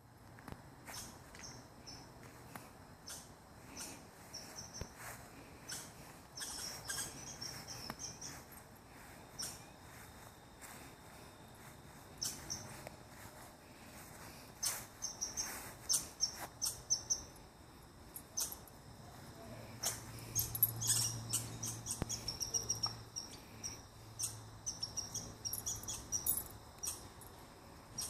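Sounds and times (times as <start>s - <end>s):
birds chirping: 3.0s - 10.0s, 11.6s - 13.2s, 14.2s - 17.4s, 19.6s - 27.1s
thin insect tone: 3.0s - 28.0s.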